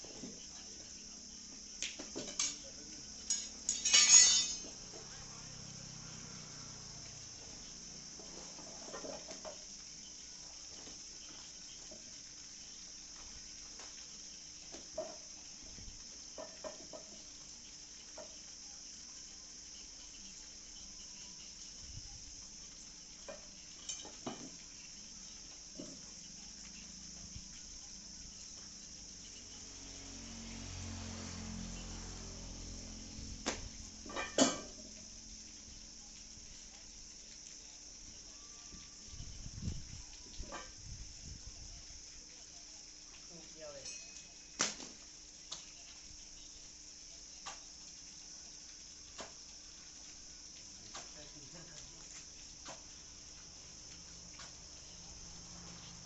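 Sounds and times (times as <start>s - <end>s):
high-pitched insect-like chirring: 0.0s - 56.0s
metallic clinks of hand tools: 3.3s - 4.7s, 43.8s - 44.4s.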